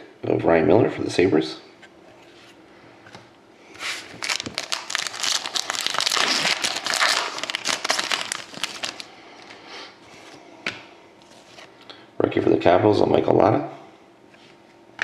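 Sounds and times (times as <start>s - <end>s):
plastic wrapper crinkling: 4.0s - 9.6s.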